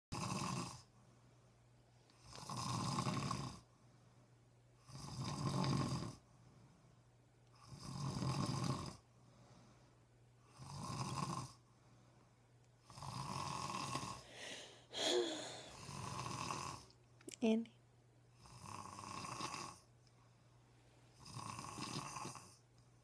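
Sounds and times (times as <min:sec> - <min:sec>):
man snoring: 0:00.1 - 0:00.9, 0:02.2 - 0:03.6, 0:04.8 - 0:06.2, 0:07.6 - 0:09.0, 0:10.5 - 0:11.6, 0:12.8 - 0:16.9, 0:18.4 - 0:19.9, 0:21.2 - 0:22.6
quiet breathing: 0:00.8 - 0:17.0.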